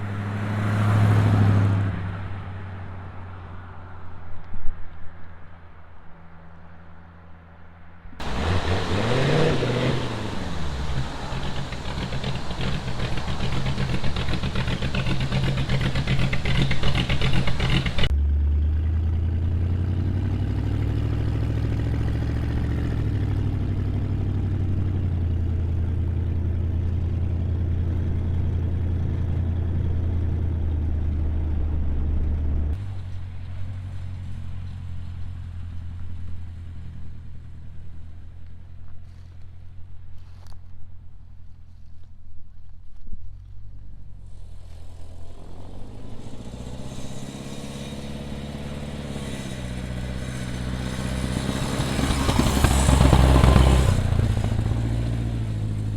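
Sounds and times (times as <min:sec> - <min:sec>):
deep engine rumble: 0:08.1 - 0:47.2, 0:48.0 - 0:55.9
engine revving loudly: 0:08.2 - 0:18.1, 0:45.8 - 0:55.9
wind hiss: 0:08.2 - 0:18.1.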